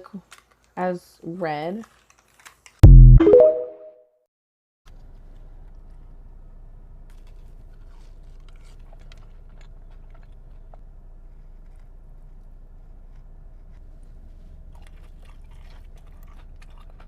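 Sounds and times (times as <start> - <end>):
chewing crunchy food: 1.8 - 2.8, 7.1 - 17.0.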